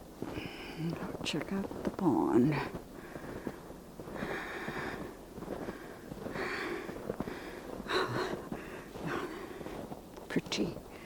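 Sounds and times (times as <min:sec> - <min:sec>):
person breathing noisily: 0:03.0 - 0:09.8.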